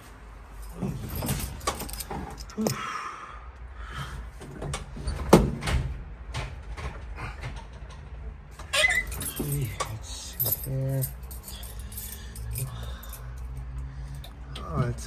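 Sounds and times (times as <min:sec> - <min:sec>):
keys jangling: 0:00.5 - 0:02.9, 0:08.8 - 0:14.4
truck door clicks and knocks: 0:04.4 - 0:07.9.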